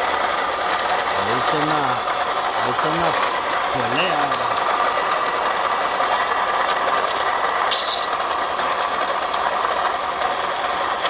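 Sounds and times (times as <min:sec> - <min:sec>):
car engine running: 0:00.0 - 0:11.0
rattling bubbling noise: 0:03.2 - 0:10.8.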